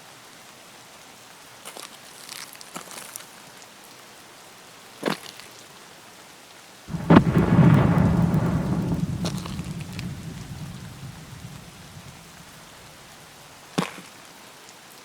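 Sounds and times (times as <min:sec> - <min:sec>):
thunder crack and rumble: 0:06.9 - 0:12.9
steady rain falling: 0:06.9 - 0:13.3.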